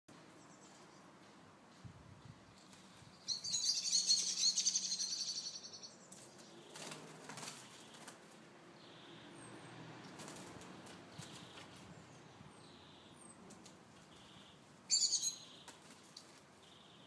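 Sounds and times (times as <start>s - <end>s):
birds chattering harshly: 11.1s - 15.8s.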